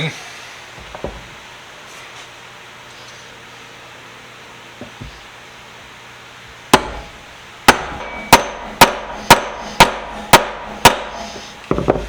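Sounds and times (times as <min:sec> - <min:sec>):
hammer striking metal pin: 0:06.8 - 0:12.0.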